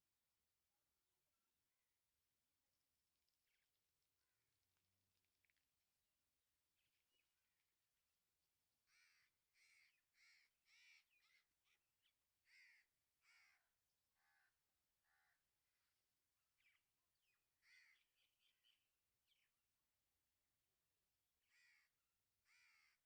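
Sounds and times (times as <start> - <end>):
faint bird calls: 8.8 - 19.7, 21.4 - 23.0.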